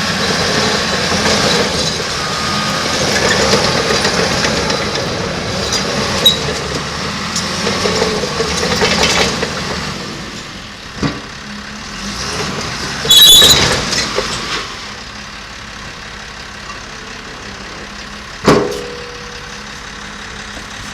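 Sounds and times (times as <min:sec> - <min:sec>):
diesel engine idling: 0:00.0 - 0:20.9
short high screech: 0:13.1 - 0:14.0.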